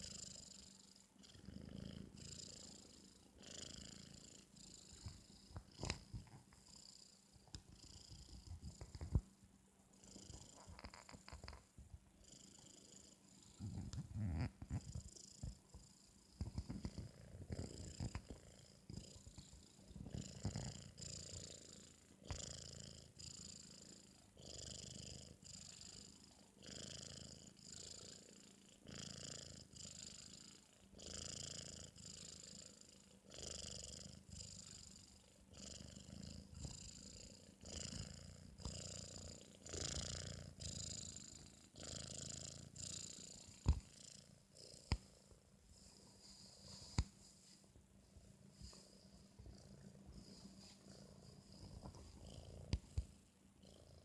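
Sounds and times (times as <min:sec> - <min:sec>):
kitten snoring with high whistle: 0:12.3 - 0:15.2.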